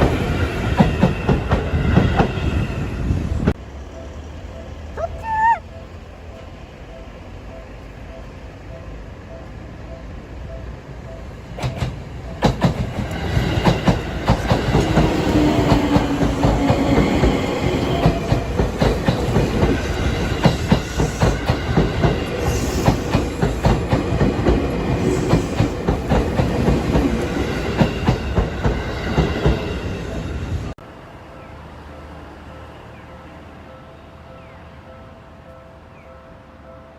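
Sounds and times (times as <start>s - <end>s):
train wheels clacking on rails: 0.0s - 2.8s, 11.5s - 30.2s
low train whine: 0.0s - 36.9s.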